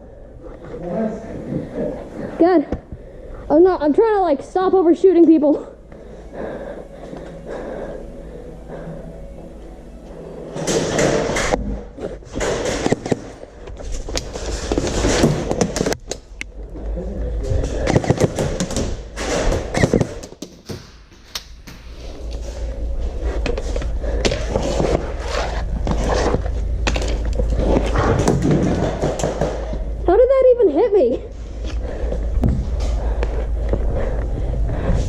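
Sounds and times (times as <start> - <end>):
low rumble of movement and gear: 22.0 - 29.0, 29.6 - 35.0.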